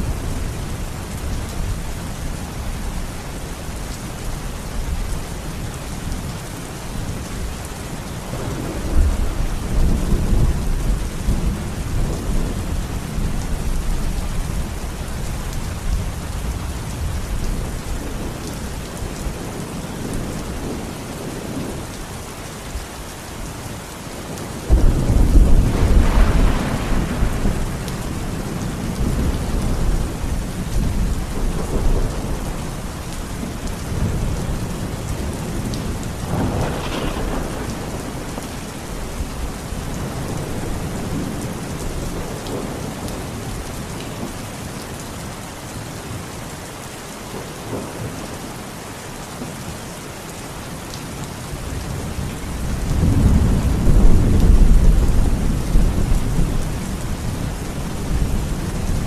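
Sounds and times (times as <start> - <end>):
steady rain: 0.0 - 59.0
thunder rumbling: 8.3 - 14.9, 24.3 - 43.8, 51.8 - 59.0.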